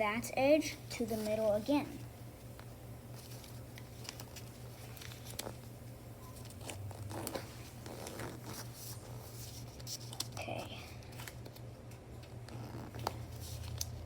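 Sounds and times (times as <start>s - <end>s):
paper rustling and crinkling: 3.1s - 5.8s, 6.4s - 14.0s.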